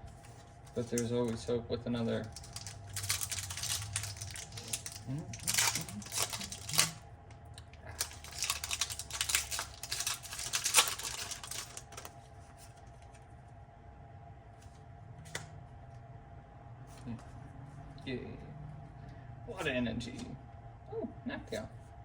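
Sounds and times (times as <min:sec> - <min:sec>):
foil wrapper crinkling and tearing: 0:02.0 - 0:07.0, 0:07.6 - 0:13.1.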